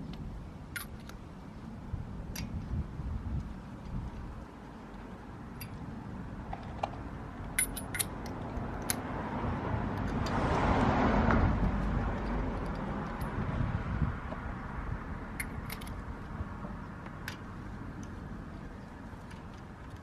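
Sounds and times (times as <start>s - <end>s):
metallic clinks of lug nuts and tools: 0.7s - 1.2s, 4.9s - 5.8s, 6.5s - 9.1s, 12.0s - 13.5s, 15.3s - 16.2s.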